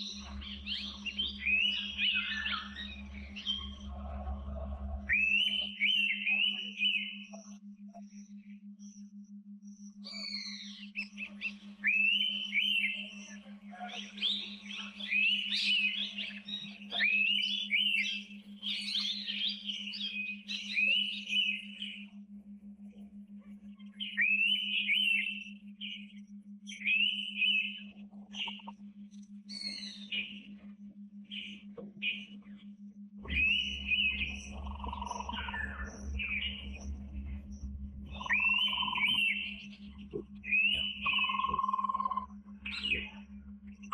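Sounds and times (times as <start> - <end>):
forest birds whistling: 0.0 - 4.0, 5.0 - 7.5, 9.8 - 13.4, 14.0 - 22.1, 24.0 - 28.8, 29.5 - 30.6, 33.2 - 43.9
steady low hum: 0.0 - 43.9.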